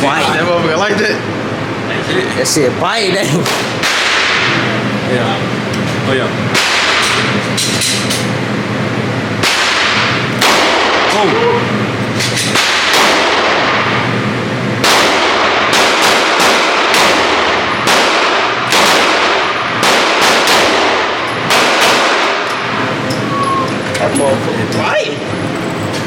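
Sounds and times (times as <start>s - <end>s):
gunshots with ringing tail: 3.5s - 4.6s, 6.5s - 7.2s, 9.4s - 11.5s, 12.5s - 14.1s, 14.8s - 22.8s.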